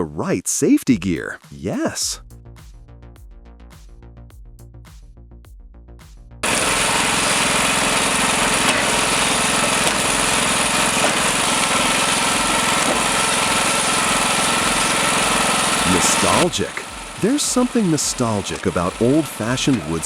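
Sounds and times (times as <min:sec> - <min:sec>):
background music: 0:00.0 - 0:06.4, 0:11.5 - 0:20.0
wood-processing machine running: 0:06.4 - 0:20.0.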